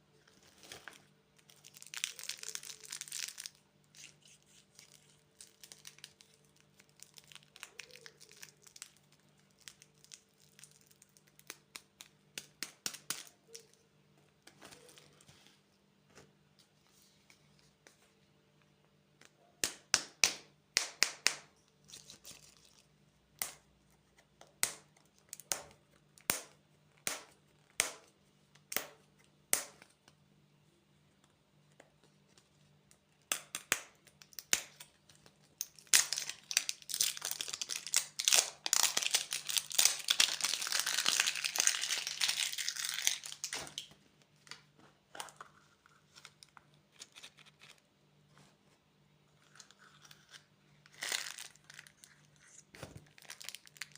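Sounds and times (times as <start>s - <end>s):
candy wrapper crinkling and tearing: 0.4s - 13.9s, 21.7s - 23.8s, 33.3s - 47.9s, 49.4s - 53.9s.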